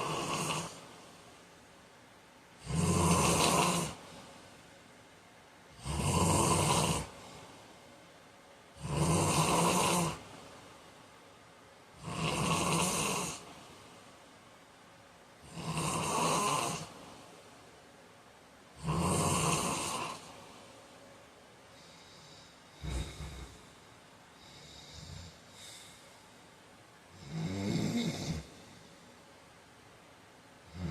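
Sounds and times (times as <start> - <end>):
man snoring: 0.0 - 0.9, 2.6 - 4.1, 5.7 - 7.4, 8.8 - 10.2, 12.0 - 13.5, 15.4 - 17.0, 18.8 - 20.3, 21.8 - 23.6, 24.4 - 25.8, 27.2 - 28.8, 30.7 - 30.9
quiet breathing: 0.0 - 1.9, 2.5 - 29.8, 30.6 - 30.9.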